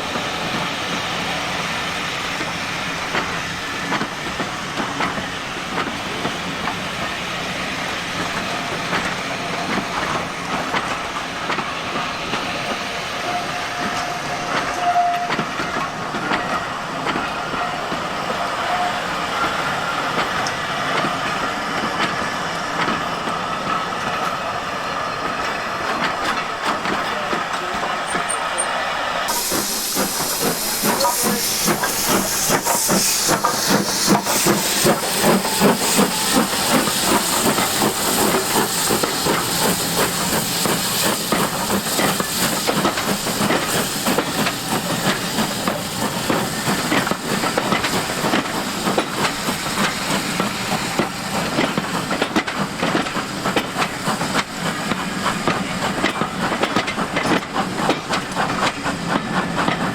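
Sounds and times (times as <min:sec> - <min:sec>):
steam locomotive exhaust beats: 0:00.0 - 0:59.9
hiss of escaping steam: 0:28.3 - 0:59.9.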